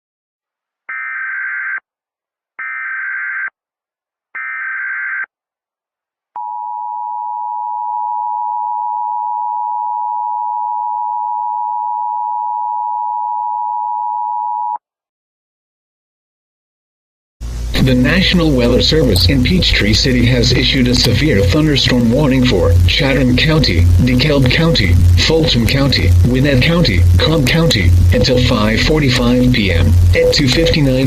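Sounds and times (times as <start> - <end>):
warbling data tones: 17.8 - 31.0.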